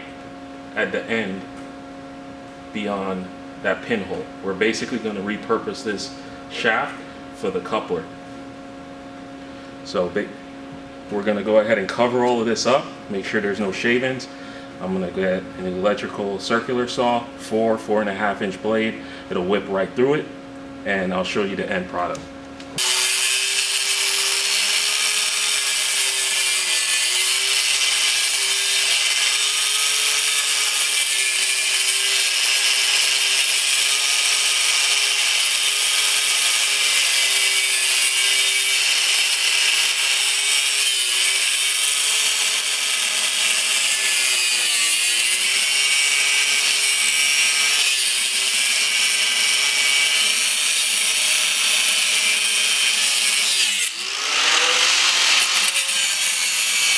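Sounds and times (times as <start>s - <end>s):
circular saw cutting metal: 22.8s - 56.9s.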